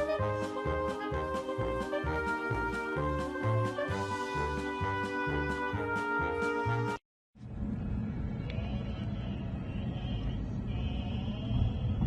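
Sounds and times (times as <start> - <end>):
low rumbling background: 7.4 - 12.0.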